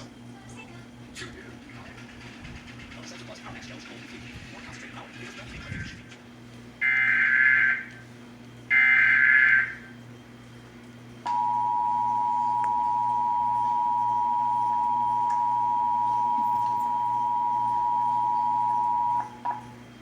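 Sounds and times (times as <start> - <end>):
two-tone attention signal: 11.3 - 19.5.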